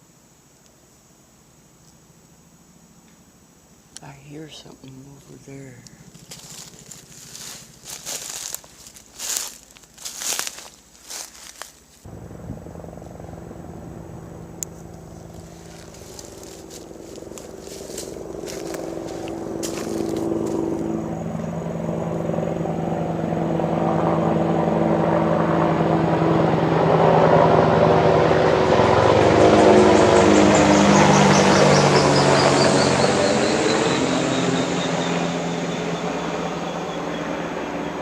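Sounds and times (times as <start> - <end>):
helicopter engine and rotor drone: 4.9 - 9.2, 12.0 - 38.0.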